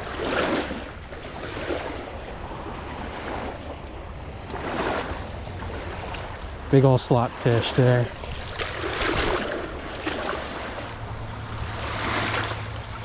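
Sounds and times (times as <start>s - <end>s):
shallow water sloshing: 0.0s - 13.0s
wind noise on microphone: 8.1s - 13.0s.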